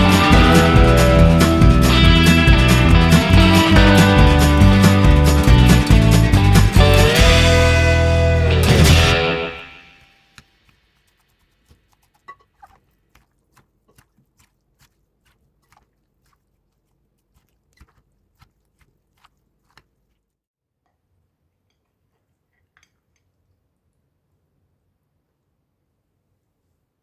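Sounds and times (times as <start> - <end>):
faint chewing crunches: 11.0 - 20.4.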